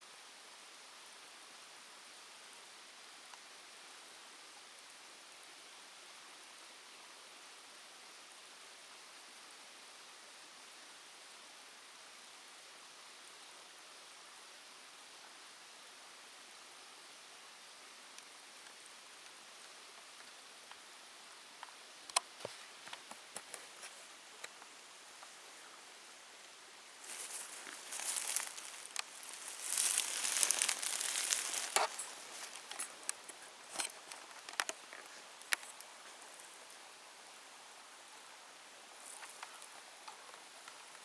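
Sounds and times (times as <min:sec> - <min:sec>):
faint outdoor hiss: 0:00.0 - 0:41.0
crackles and clicks on dry ground: 0:21.6 - 0:25.4, 0:27.0 - 0:36.8, 0:39.0 - 0:41.0.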